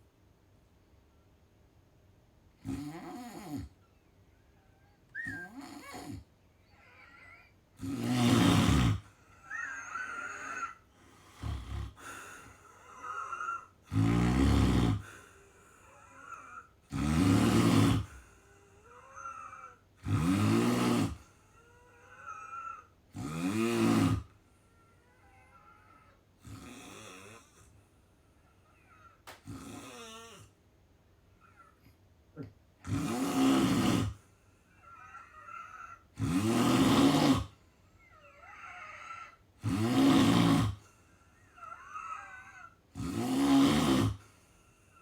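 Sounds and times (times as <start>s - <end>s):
person snoring: 2.6s - 3.8s, 5.2s - 6.2s, 6.8s - 27.8s, 28.8s - 30.5s, 32.4s - 34.2s, 34.8s - 45.0s
soft breathing: 14.4s - 16.9s.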